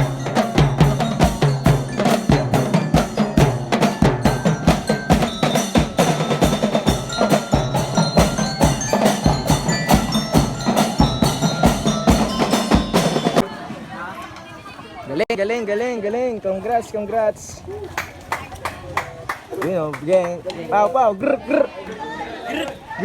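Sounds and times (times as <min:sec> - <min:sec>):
bell-like mallet notes: 0:00.0 - 0:13.5.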